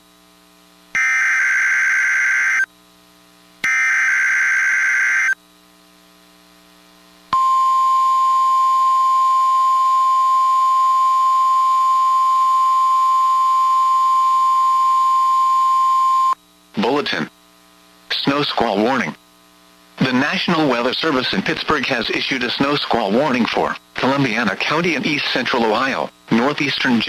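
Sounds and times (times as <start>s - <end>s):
steady warning alarm tone: 1.0s - 2.7s, 3.6s - 5.4s, 7.4s - 16.4s.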